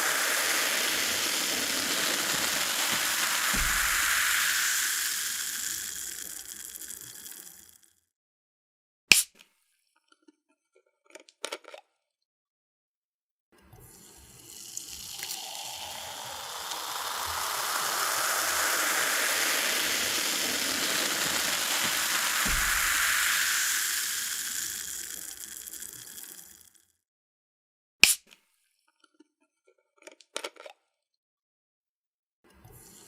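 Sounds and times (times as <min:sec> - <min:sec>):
cola pouring and fizzing: 0:00.0 - 0:07.8, 0:13.9 - 0:26.8.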